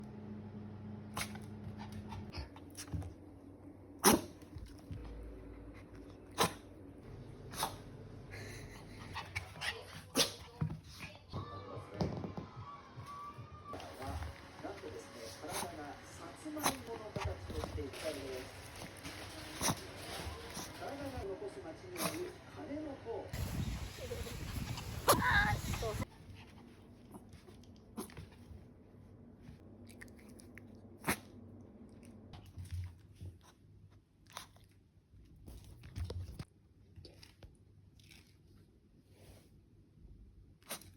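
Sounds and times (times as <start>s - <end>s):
dog sneezing: 4.0s - 4.4s, 6.3s - 6.6s, 7.5s - 7.8s.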